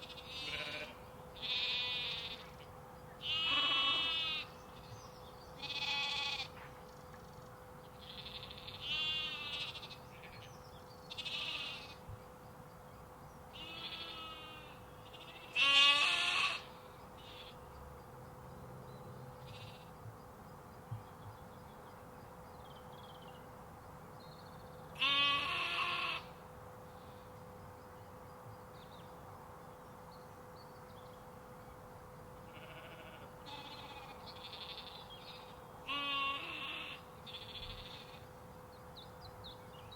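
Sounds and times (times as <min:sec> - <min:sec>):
sheep and lambs bleating: 0:00.0 - 0:02.6, 0:03.2 - 0:04.6, 0:05.6 - 0:06.6, 0:08.0 - 0:10.5, 0:11.1 - 0:12.1, 0:13.5 - 0:17.6, 0:19.4 - 0:20.0, 0:25.0 - 0:26.4, 0:32.4 - 0:38.3
faint steady hum: 0:00.0 - 0:39.9.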